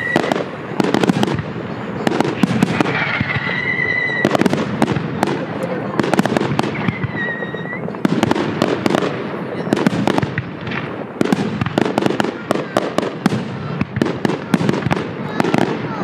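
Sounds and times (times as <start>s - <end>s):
high firework whistle: 0.0s - 1.4s, 2.0s - 5.3s, 6.0s - 8.1s
fireworks bangs and crackling: 0.0s - 16.0s.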